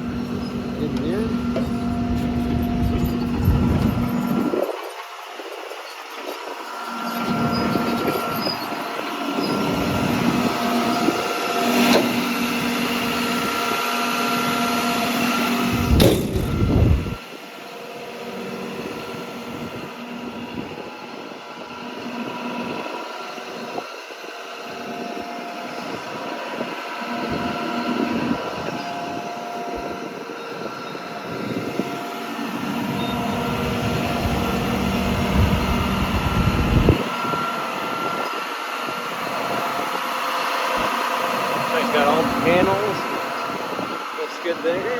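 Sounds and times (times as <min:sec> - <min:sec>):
rumbling handling noise: 0:00.0 - 0:04.8, 0:15.6 - 0:17.2
excavator diesel engine idling: 0:00.0 - 0:44.9.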